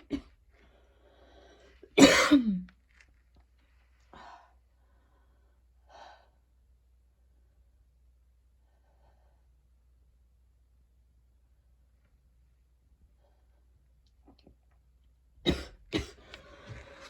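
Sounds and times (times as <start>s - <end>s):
faint breaths: 0.5s - 2.0s, 16.1s - 17.0s
woman coughing: 2.0s - 2.7s, 15.5s - 16.2s.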